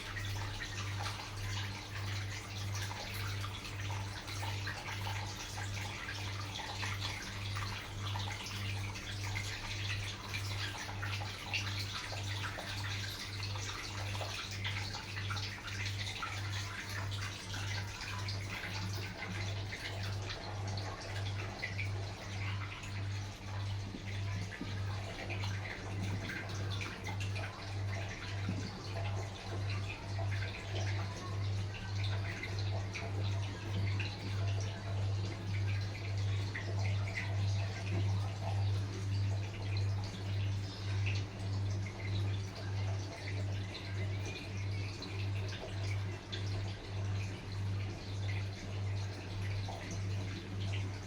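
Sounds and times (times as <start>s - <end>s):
washing machine water splashing: 0.0s - 51.0s.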